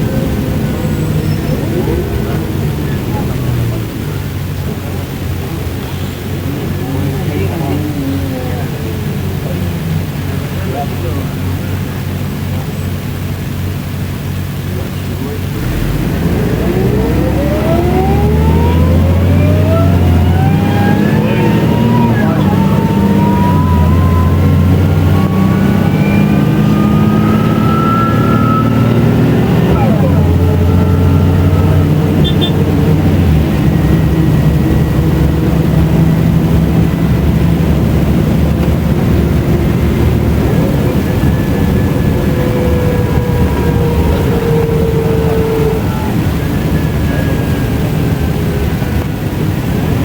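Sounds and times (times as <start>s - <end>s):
bus engine accelerating: 0.0s - 50.0s
rising gearbox whine: 15.5s - 49.1s.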